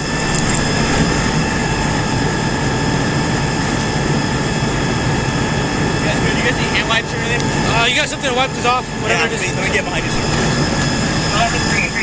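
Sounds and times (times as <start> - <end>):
large engine drone with whine: 0.0 - 12.0.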